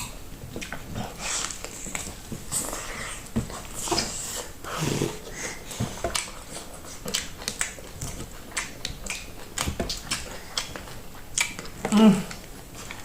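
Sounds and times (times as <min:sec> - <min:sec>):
wet chewing and lip smacking: 0:00.0 - 0:02.8, 0:06.1 - 0:13.0.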